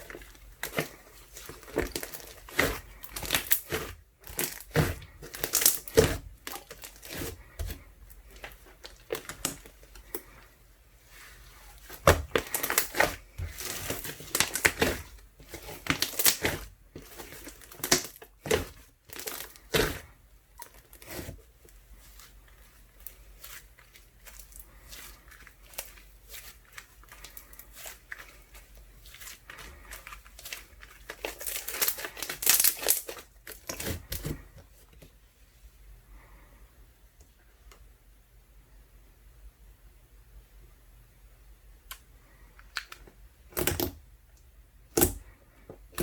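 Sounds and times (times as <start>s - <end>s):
slime crackling and popping: 0.0s - 10.3s, 11.8s - 21.3s, 23.0s - 34.2s.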